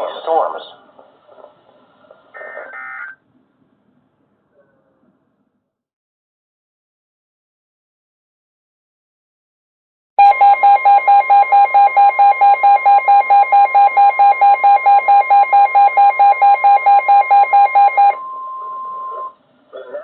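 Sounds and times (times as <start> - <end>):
steady alarm tone: 10.2 - 19.4.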